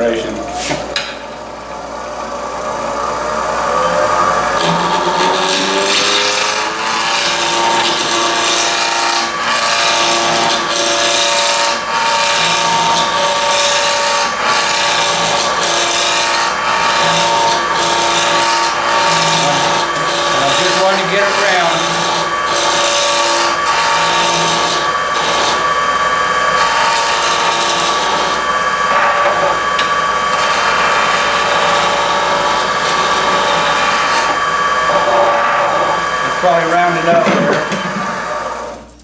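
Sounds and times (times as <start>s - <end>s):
wood lathe motor whine: 0.0s - 38.9s
tool scraping spinning wood: 3.8s - 38.8s.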